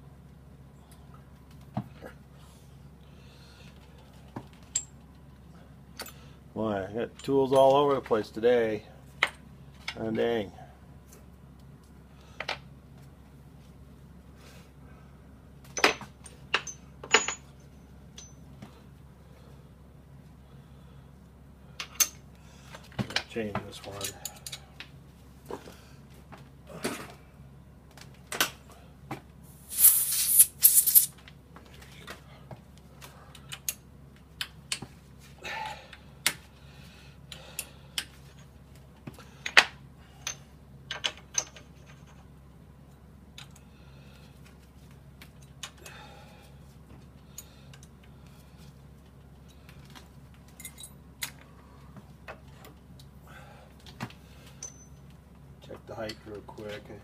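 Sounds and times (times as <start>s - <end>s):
steady low hum: 0.0s - 57.0s
steel tools clinking and clanking: 16.6s - 17.5s.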